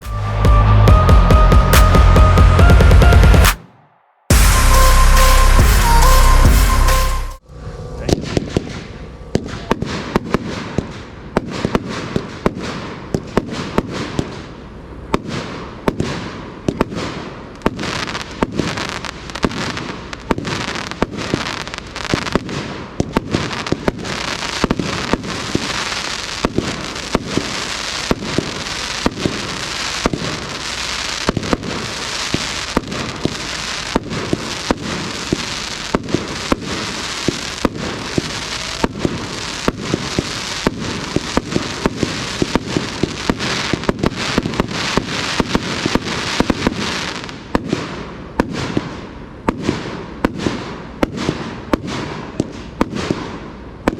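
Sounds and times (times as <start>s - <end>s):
firework shots: 3.2s - 7.4s, 8.0s - 53.9s
firework hiss: 17.0s - 47.6s.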